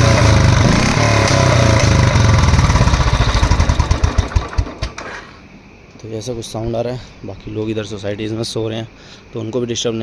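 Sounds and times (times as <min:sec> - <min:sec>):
motorcycle engine idling: 0:00.0 - 0:05.1.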